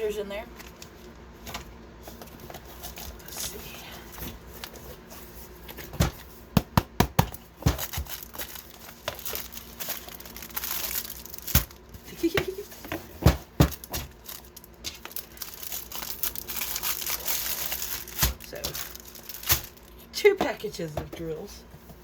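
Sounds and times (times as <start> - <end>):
plastic packaging crinkling: 0.5 - 5.1, 7.5 - 20.1.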